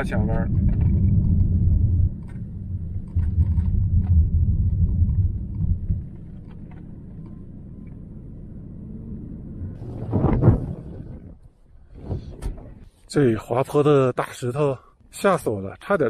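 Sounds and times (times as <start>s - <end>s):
low road rumble inside vehicle: 0.0s - 13.0s.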